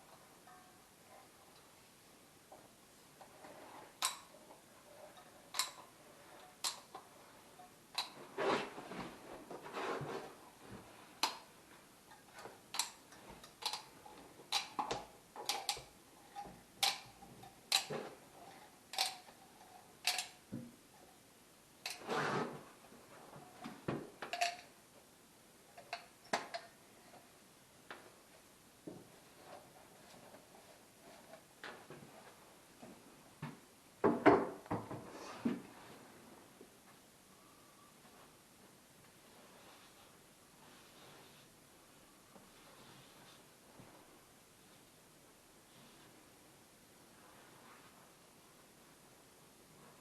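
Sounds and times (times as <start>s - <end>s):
scraping or rustling: 8.2s - 11.1s, 21.9s - 23.3s.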